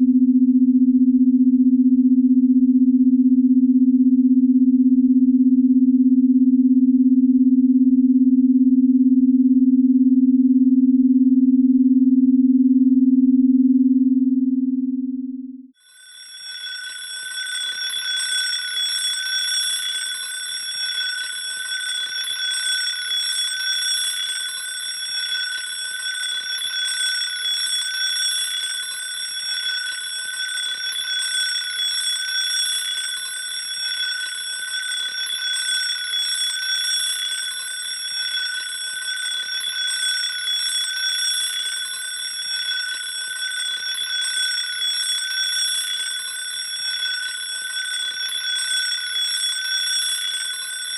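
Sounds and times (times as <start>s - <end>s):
alarm clock ringing: 15.8s - 50.9s.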